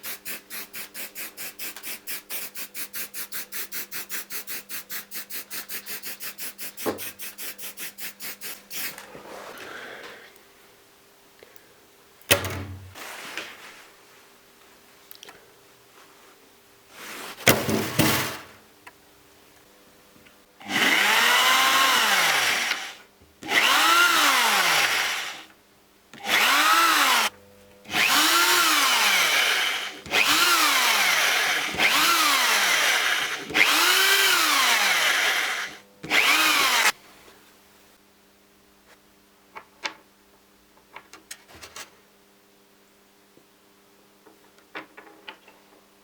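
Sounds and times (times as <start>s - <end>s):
power tool motor bursts: 20.6s - 25.5s, 26.2s - 27.3s, 27.9s - 37.0s.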